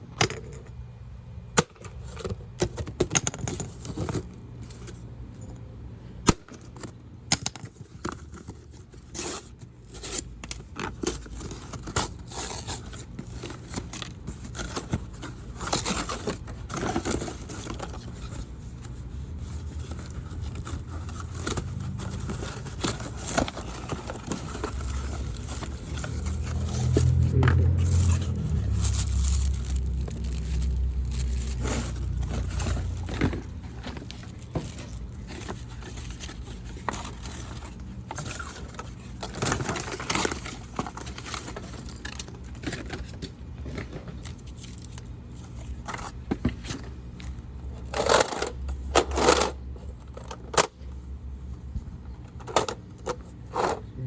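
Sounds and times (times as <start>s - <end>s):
scraping and rustling handling noise: 1.7s - 5.8s, 6.5s - 54.0s
low hum: 17.7s - 42.2s.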